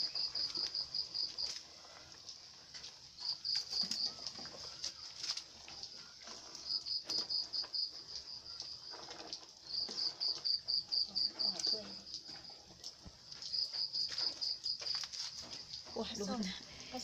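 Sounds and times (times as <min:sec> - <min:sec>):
insect chirping: 0:00.0 - 0:01.6, 0:03.2 - 0:05.3, 0:06.6 - 0:16.4.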